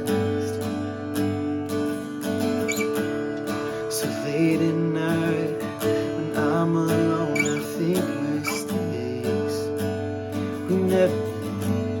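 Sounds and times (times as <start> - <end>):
person singing: 0.0 - 0.8, 3.8 - 9.9, 10.5 - 12.0
acoustic guitar strumming: 0.0 - 12.0.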